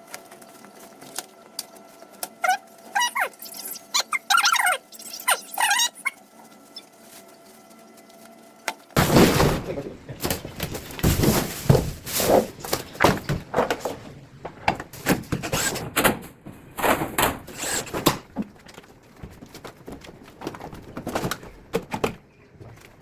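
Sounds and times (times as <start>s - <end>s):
tools and parts clattering: 9.0s - 23.0s.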